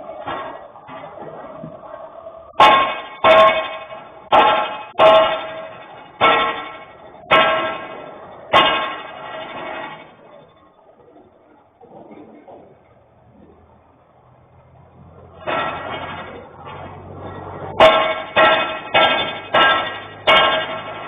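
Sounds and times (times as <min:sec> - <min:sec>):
hammer clanging on metal: 0:15.4 - 0:21.0.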